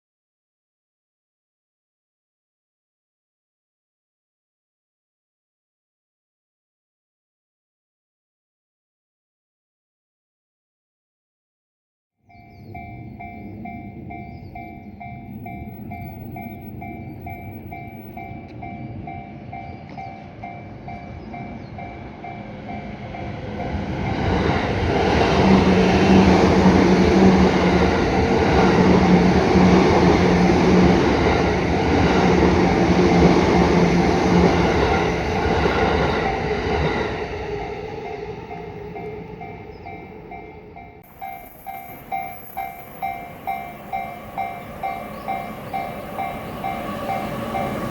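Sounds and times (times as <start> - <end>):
electric train passing: 12.3 - 47.9.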